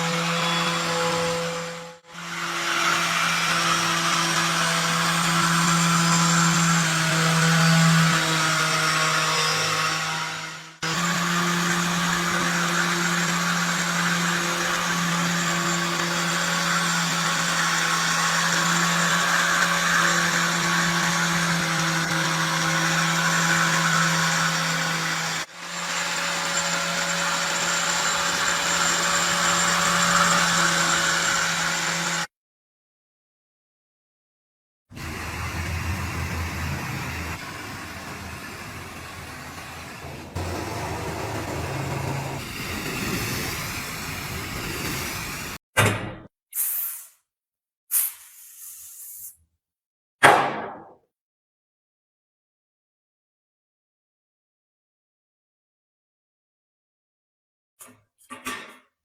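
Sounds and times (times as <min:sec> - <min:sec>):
electric power tool running: 0:00.0 - 0:32.3, 0:35.0 - 0:45.6.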